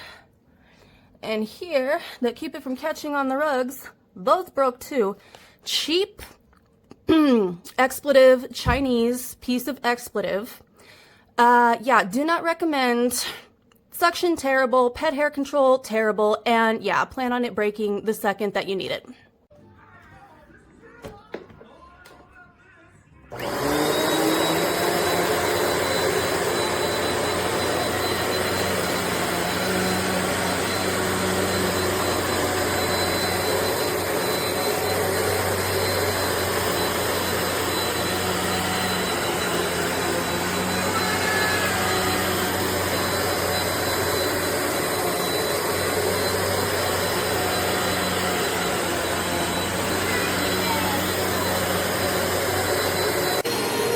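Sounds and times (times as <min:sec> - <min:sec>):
vacuum cleaner motor whining: 0:23.3 - 0:53.9.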